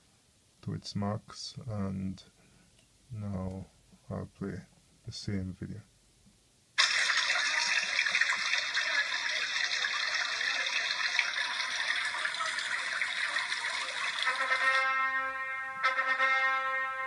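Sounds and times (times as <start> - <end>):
brass music: 12.4 - 17.0.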